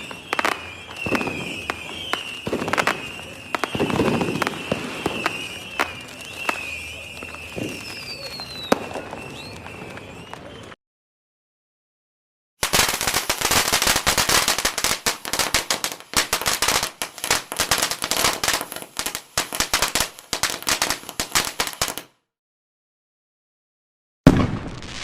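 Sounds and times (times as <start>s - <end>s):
firecrackers banging: 0.0s - 10.8s.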